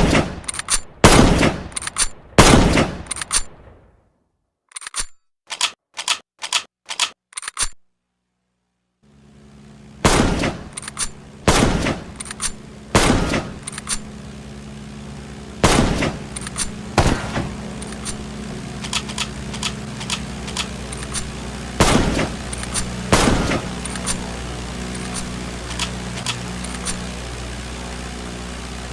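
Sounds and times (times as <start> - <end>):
rifle gunshots: 0.0 - 3.4, 10.0 - 14.0, 15.6 - 18.2, 20.0 - 24.3
steady low rumble: 9.1 - 28.9.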